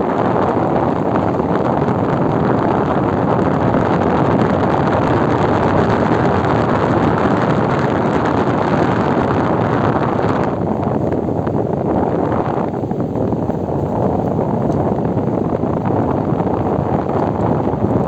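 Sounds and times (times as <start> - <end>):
air conditioner blowing air: 0.0 - 18.0.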